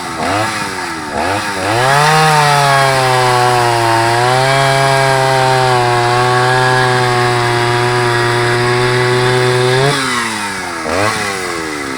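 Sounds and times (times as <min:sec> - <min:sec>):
chainsaw engine revving: 0:00.0 - 0:11.9.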